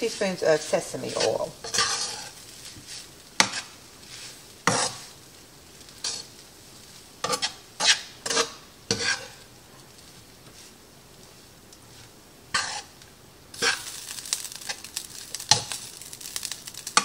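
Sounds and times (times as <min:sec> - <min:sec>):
utensil scraping a pan: 0:00.0 - 0:05.2, 0:05.9 - 0:06.4, 0:07.2 - 0:09.5, 0:11.8 - 0:17.0
faint sizzle: 0:00.0 - 0:17.0.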